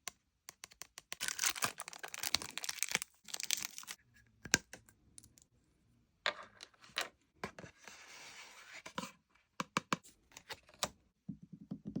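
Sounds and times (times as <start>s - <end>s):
wrapping rustling and tearing: 1.2s - 4.0s.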